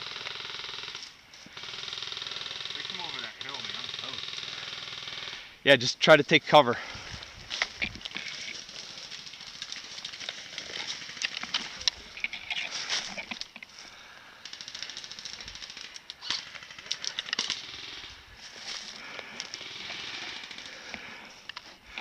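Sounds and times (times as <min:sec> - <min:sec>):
airsoft full-auto burst: 0:00.0 - 0:05.5, 0:14.5 - 0:18.2, 0:19.6 - 0:20.7.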